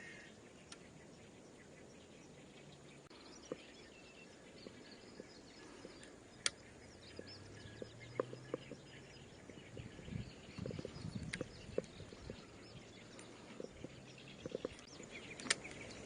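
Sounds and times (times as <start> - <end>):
small birds chirping: 0.0 - 16.0
light clicks: 5.7 - 8.8, 10.5 - 12.4, 13.1 - 16.0.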